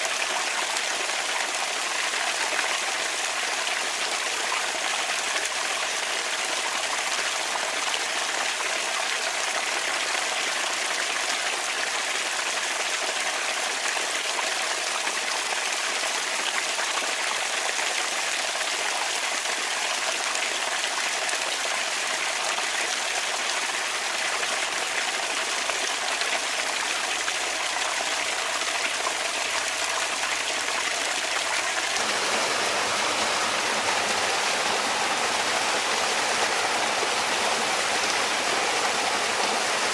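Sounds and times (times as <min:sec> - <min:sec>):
fountain water trickling: 0:23.2 - 0:39.9.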